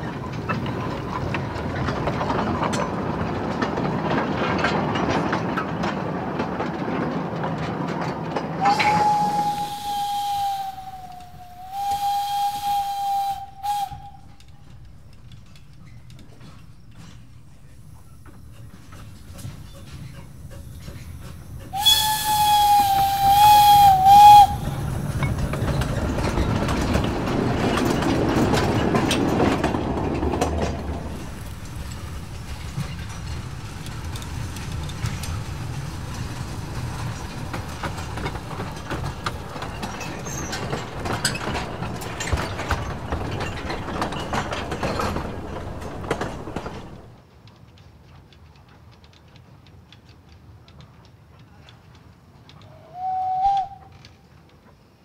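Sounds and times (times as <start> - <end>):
train rumble and steam hiss: 0.0 - 55.0
wheels clicking over rails: 0.0 - 55.0
steam locomotive whistle: 8.6 - 14.7, 21.6 - 25.8, 52.7 - 54.2.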